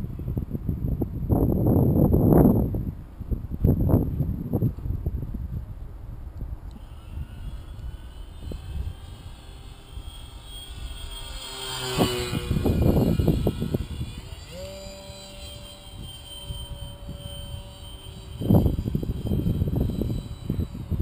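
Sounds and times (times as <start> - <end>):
wind rumbling on microphone: 0.0 - 21.0
model plane motor whining: 6.6 - 21.0.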